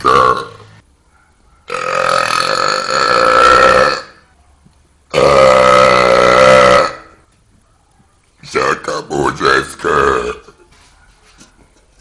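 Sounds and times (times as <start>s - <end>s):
man belching: 0.0s - 0.6s, 1.7s - 4.2s, 5.1s - 7.2s, 8.6s - 10.6s.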